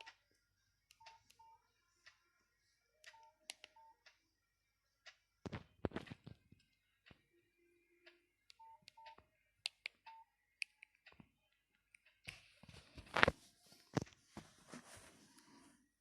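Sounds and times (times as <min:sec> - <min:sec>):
mobile phone beeps and clicks: 0:08.5 - 0:09.2.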